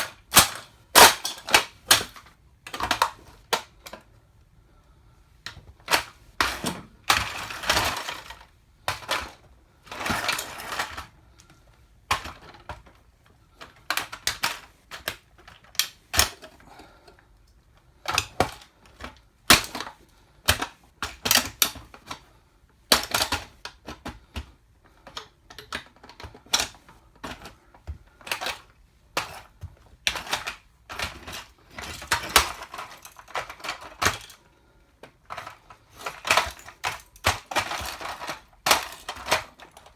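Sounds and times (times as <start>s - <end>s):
toy car cracking underfoot: 0.0s - 4.0s, 5.5s - 11.5s, 12.1s - 17.0s, 18.0s - 22.3s, 22.9s - 39.9s.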